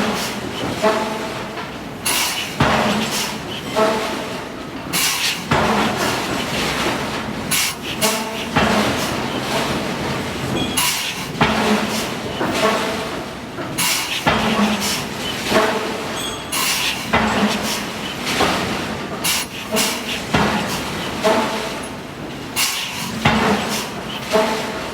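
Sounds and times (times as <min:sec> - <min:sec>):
machinery noise: 0:00.0 - 0:24.9
forging hammer striking steel: 0:15.6 - 0:18.6.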